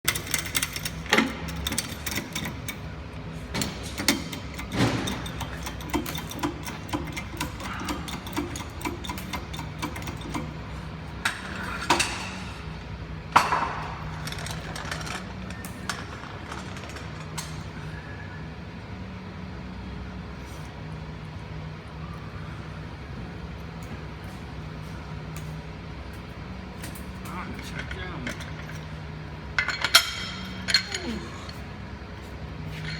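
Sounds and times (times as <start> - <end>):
steady low hum: 0.1 - 32.9.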